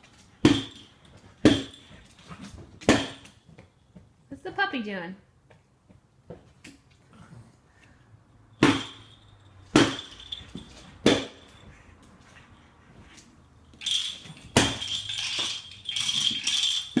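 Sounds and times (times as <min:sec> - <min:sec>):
object clattering and rattling: 0:08.6 - 0:11.7, 0:13.7 - 0:17.0
object knocking with ringing clink: 0:08.6 - 0:11.7.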